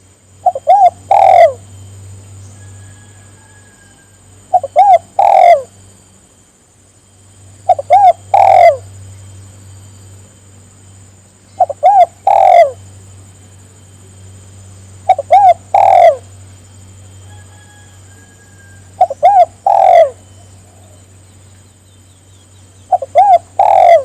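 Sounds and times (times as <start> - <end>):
dove cooing: 0.0 - 1.7, 2.6 - 5.8, 7.6 - 8.9, 11.6 - 12.9, 15.0 - 16.4, 17.2 - 21.1, 22.8 - 24.0
steady low hum: 0.0 - 24.0.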